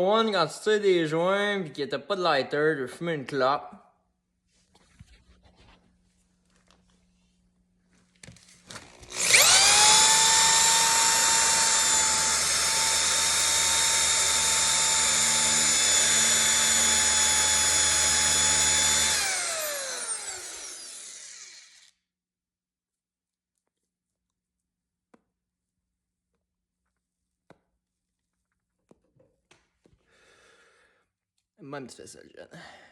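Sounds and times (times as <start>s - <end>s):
power tool motor whining: 8.8s - 21.9s.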